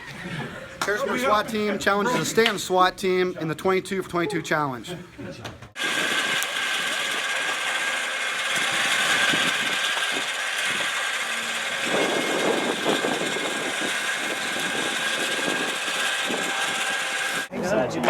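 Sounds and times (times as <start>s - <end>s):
constant high whine: 5.8s - 17.5s
engine running: 5.8s - 17.5s.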